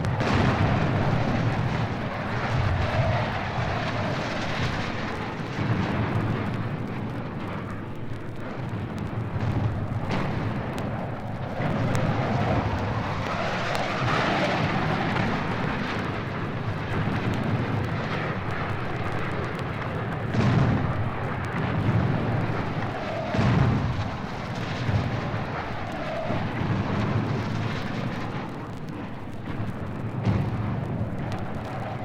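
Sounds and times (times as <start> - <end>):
rumbling roar: 0.0 - 7.5, 8.4 - 32.0.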